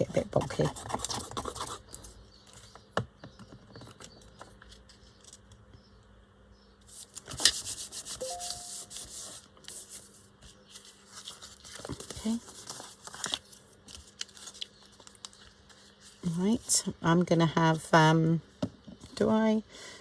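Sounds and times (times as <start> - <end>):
paper rubbing against paper: 6.9 - 11.7.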